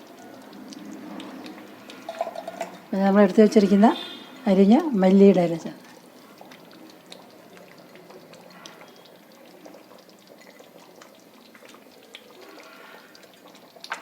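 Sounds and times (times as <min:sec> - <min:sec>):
curry bubbling in a pot: 0:00.0 - 0:14.0.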